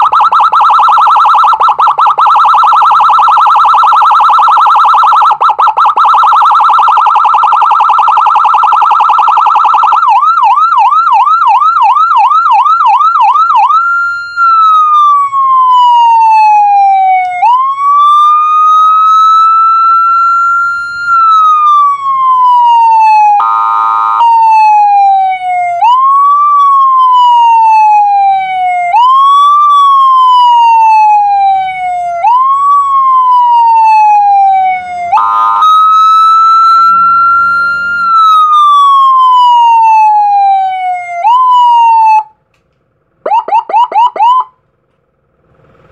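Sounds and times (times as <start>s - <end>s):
electronic siren cycling tones: 0.0s - 42.4s, 43.2s - 44.6s
harsh horn blast: 35.2s - 35.8s, 36.8s - 38.5s.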